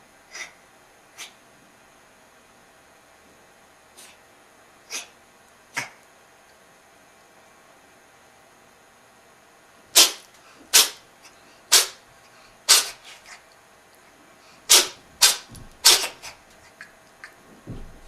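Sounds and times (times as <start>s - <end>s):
cat sneezing: 0.3s - 0.6s, 4.9s - 6.0s, 10.0s - 11.0s, 11.7s - 12.0s, 12.7s - 13.4s, 14.7s - 16.8s.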